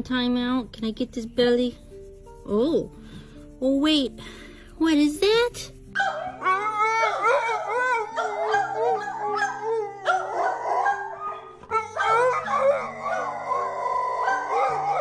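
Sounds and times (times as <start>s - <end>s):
background music: 0.0s - 15.0s
dog howling: 6.0s - 15.0s.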